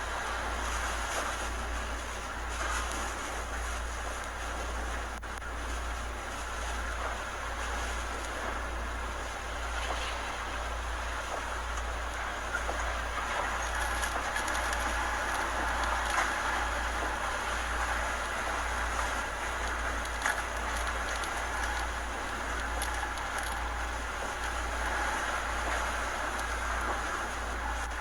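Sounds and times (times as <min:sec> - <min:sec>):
wind rumble on microphone: 0:00.0 - 0:28.0
wind roaring: 0:08.5 - 0:28.0.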